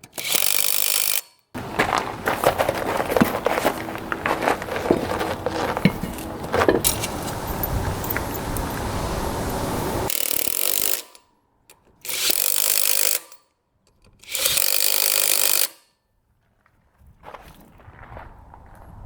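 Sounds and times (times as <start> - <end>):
compressed air hissing: 6.3 - 10.1.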